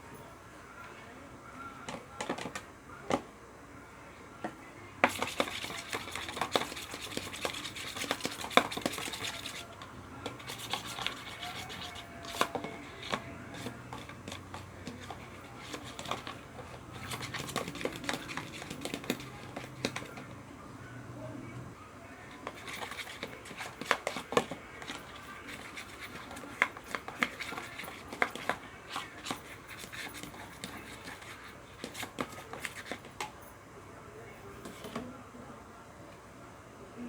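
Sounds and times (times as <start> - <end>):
utensil stirring slime in bowl: 1.9 - 3.2, 5.0 - 20.4, 22.2 - 33.4, 34.6 - 35.0.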